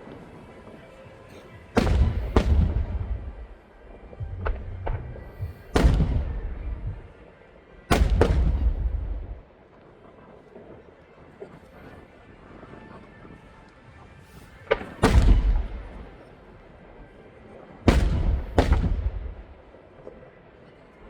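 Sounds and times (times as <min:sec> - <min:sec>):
fireworks bangs: 0:01.8 - 0:07.2, 0:07.9 - 0:09.4, 0:14.6 - 0:16.2, 0:17.9 - 0:20.0
small firework cracks: 0:01.8 - 0:07.2, 0:07.9 - 0:12.1, 0:14.6 - 0:16.4, 0:17.8 - 0:21.0.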